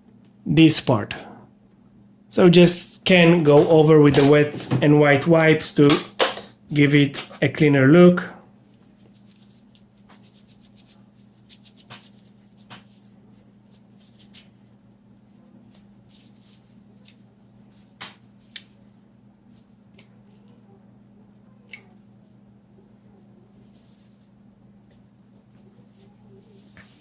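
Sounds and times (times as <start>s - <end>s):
faint low hum: 0.0s - 27.0s
wet wipe rubbing on plastic: 8.7s - 14.4s.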